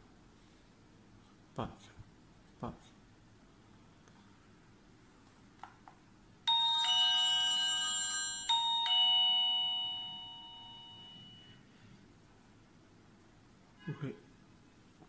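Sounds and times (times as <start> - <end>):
doorbell ding-dong chime: 6.5 - 11.6.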